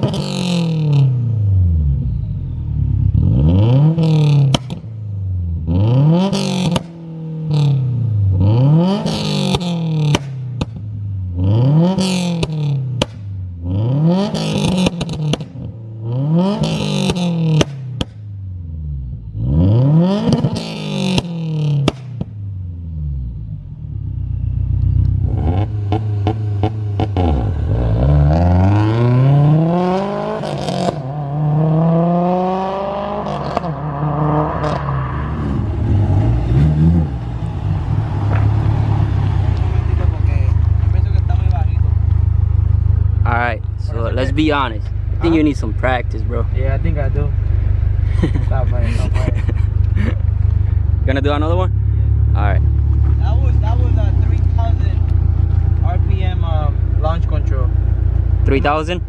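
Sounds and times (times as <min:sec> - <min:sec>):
car engine revving: 0:00.0 - 0:59.0
exhaust pops and crackles: 0:04.5 - 0:04.9, 0:09.4 - 0:10.8, 0:12.2 - 0:13.4, 0:14.4 - 0:15.7, 0:16.6 - 0:18.3, 0:20.3 - 0:22.4, 0:38.2 - 0:38.7, 0:39.5 - 0:47.6, 0:48.2 - 0:51.7, 0:52.6 - 0:59.0
car pulling away: 0:22.5 - 0:59.0.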